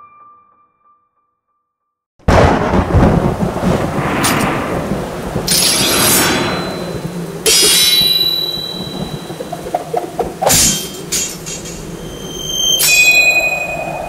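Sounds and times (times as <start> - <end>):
loud rumbling hit: 2.3 - 12.1
metallic blade strikes ringing: 7.5 - 8.8.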